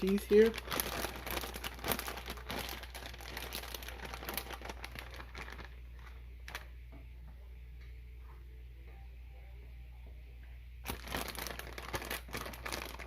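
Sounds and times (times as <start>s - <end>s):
plastic bag crinkling: 0.0s - 6.7s, 10.8s - 13.0s
faint low hum: 0.0s - 13.0s.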